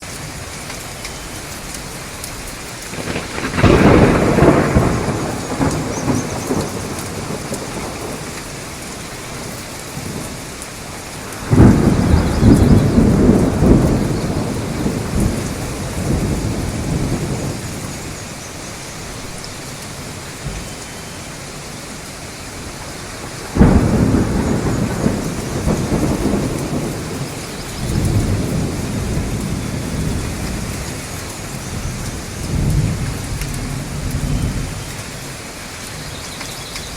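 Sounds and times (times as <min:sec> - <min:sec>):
steady rain falling: 0:00.0 - 0:36.9
thunder claps: 0:02.8 - 0:18.1, 0:22.8 - 0:34.9
soft thunder rumble: 0:02.8 - 0:19.4, 0:22.6 - 0:36.9.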